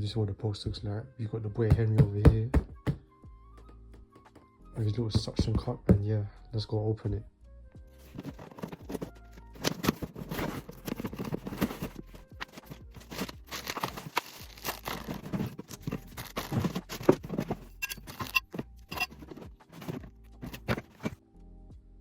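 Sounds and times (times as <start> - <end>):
cardboard packaging crunching and tearing: 8.1 - 21.2.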